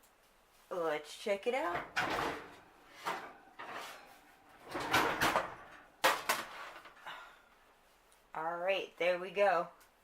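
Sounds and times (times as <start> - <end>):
pan scraping in oven: 1.7 - 5.8.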